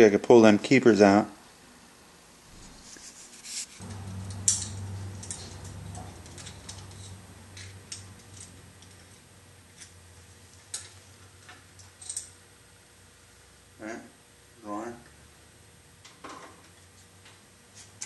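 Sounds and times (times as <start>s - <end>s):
low hum: 3.8s - 11.4s.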